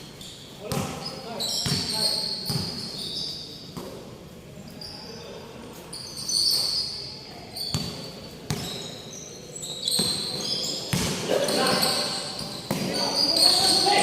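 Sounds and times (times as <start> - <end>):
sneakers squeaking on court: 0.0 - 4.1, 4.7 - 14.0
basketball bouncing: 10.9 - 11.2.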